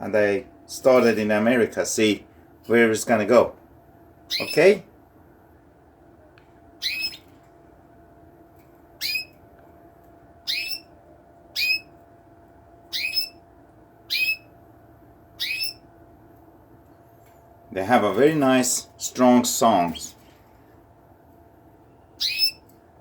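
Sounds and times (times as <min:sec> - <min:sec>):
canary calling: 0:04.2 - 0:04.8, 0:06.8 - 0:07.4, 0:09.0 - 0:09.4, 0:10.4 - 0:12.0, 0:12.8 - 0:14.6, 0:15.3 - 0:15.9, 0:21.9 - 0:22.7.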